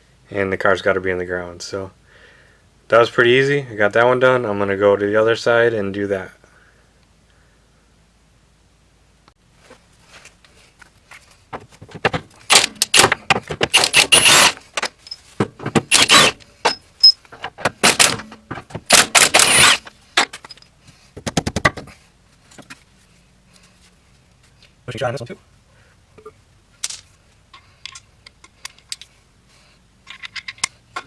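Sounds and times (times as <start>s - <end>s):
impact wrench rattling bursts: 12.0s - 19.9s
tools clicking: 12.5s - 15.2s, 15.9s - 20.7s.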